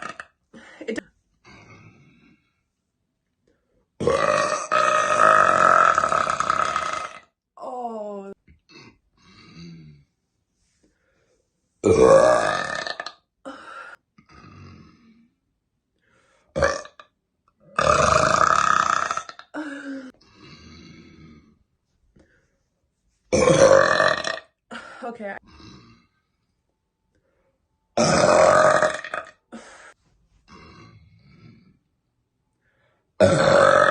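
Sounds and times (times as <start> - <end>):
woman burping: 0.0 - 1.9, 4.0 - 7.9, 11.8 - 13.2, 16.6 - 17.1, 23.3 - 25.8, 28.0 - 29.8, 33.2 - 33.9.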